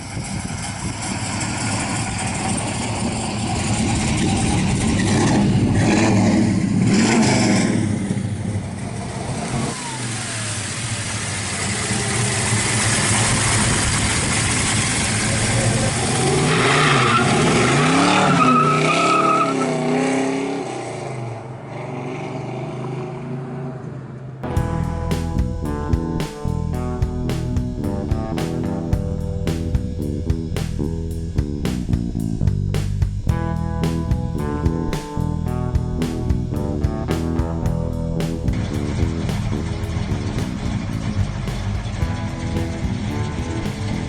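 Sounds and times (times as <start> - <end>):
car engine revving: 1.3 - 8.6, 24.5 - 44.0.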